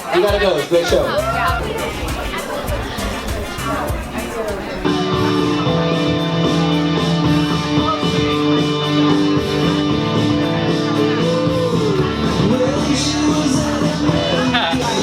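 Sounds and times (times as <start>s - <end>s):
guitar music over a beat: 0.3s - 15.0s.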